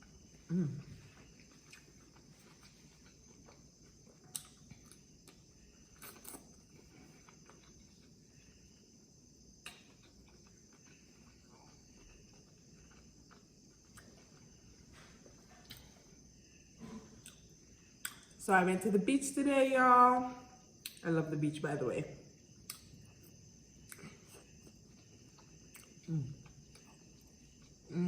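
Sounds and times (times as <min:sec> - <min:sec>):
quiet chewing clicks: 0:00.8 - 0:08.8, 0:09.5 - 0:16.0, 0:22.6 - 0:27.9.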